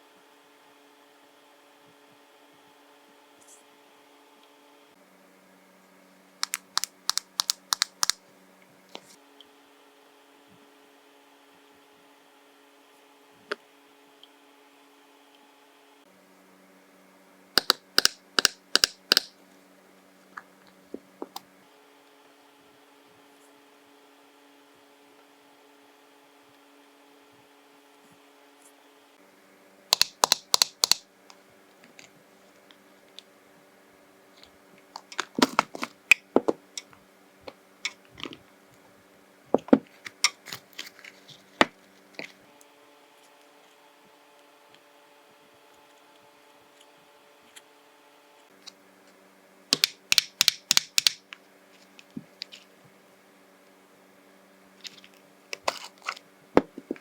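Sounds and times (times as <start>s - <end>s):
sharp hard clicks: 6.4s - 8.2s, 17.6s - 19.3s, 29.9s - 31.0s, 49.7s - 51.2s.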